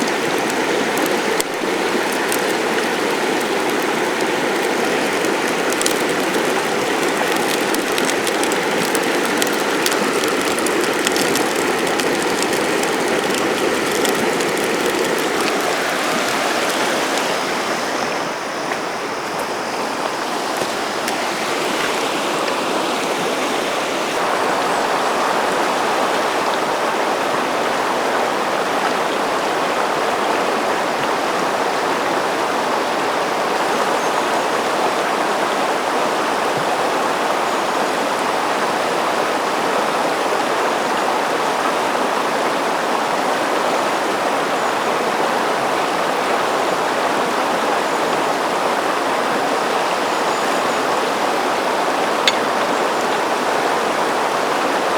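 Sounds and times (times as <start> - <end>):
small sharp crackles: 0.0 - 18.0, 52.2 - 53.1
river water rushing: 0.0 - 54.9.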